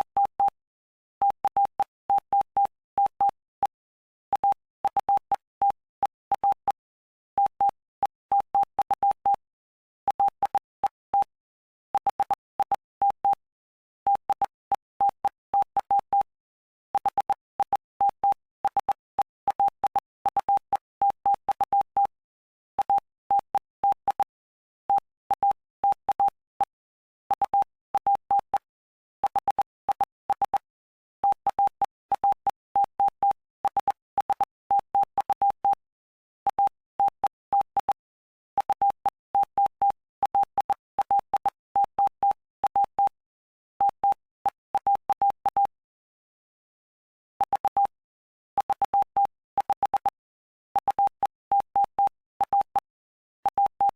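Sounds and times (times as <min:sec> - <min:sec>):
morse code beeps: 0:07.4 - 0:09.5, 0:10.1 - 0:11.4, 0:22.8 - 0:35.8, 0:36.5 - 0:38.0, 0:38.6 - 0:43.2, 0:43.8 - 0:45.8, 0:47.4 - 0:48.0, 0:48.6 - 0:50.2, 0:50.8 - 0:53.9.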